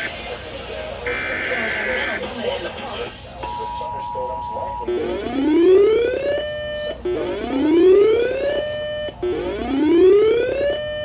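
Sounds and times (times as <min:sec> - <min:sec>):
rising siren-like alert whoop: 0:07.4 - 0:11.0.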